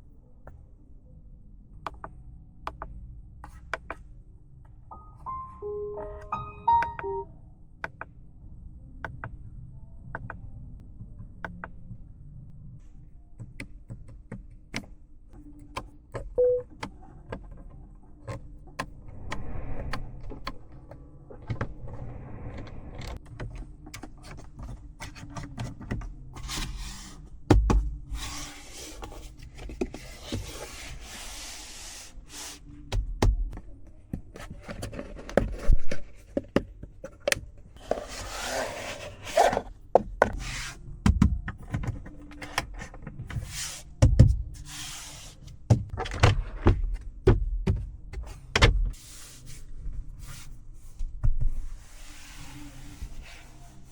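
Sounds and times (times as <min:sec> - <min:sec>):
short tone: 0:05.0 - 0:07.3.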